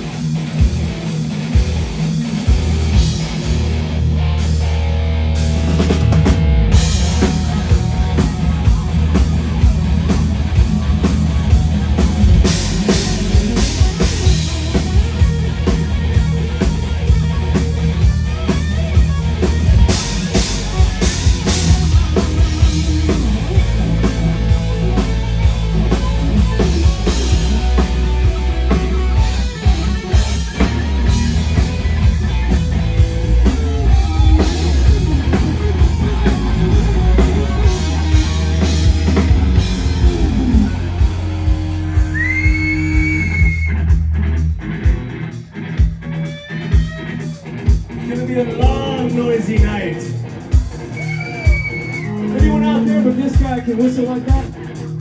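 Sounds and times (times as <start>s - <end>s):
heavy metal band playing: 0.0s - 55.0s
drum hits: 5.8s - 18.2s
crowd whistle: 33.4s - 44.2s, 50.6s - 52.5s.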